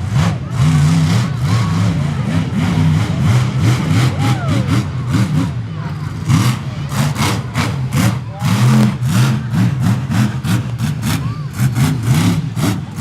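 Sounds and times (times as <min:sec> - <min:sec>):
truck engine revving: 0:00.0 - 0:13.0.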